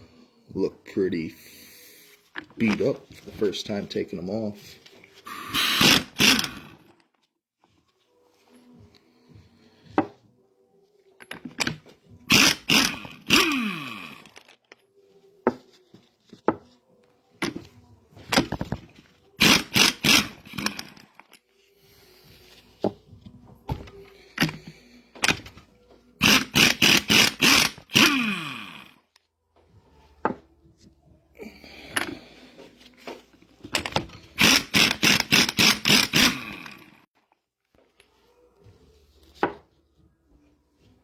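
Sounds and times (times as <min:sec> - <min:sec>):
metal parts knocking: 0:11.2 - 0:13.5, 0:17.4 - 0:21.2, 0:33.6 - 0:36.8.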